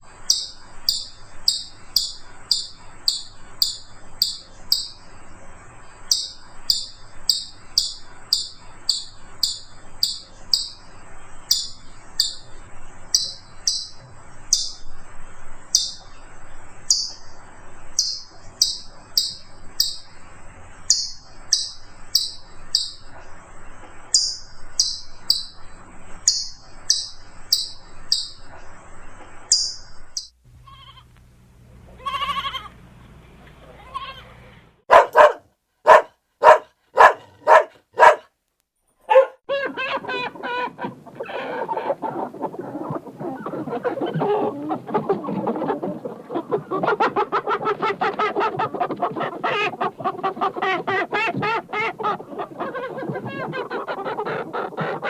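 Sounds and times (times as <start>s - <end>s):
bird calling sharply: 34.9s - 38.2s.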